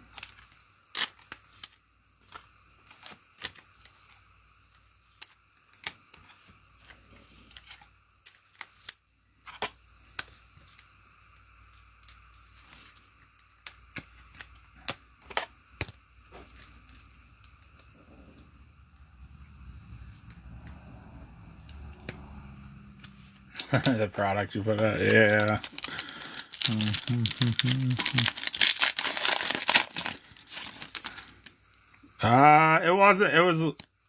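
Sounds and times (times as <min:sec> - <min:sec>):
cards rustling: 0:13.8 - 0:17.8, 0:22.9 - 0:31.6.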